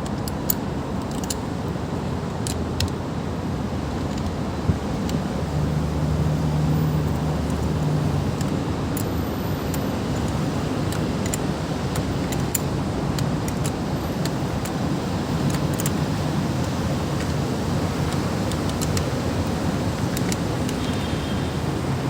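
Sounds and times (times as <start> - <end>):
traffic noise: 0.0 - 22.0
light clicks: 15.4 - 21.5.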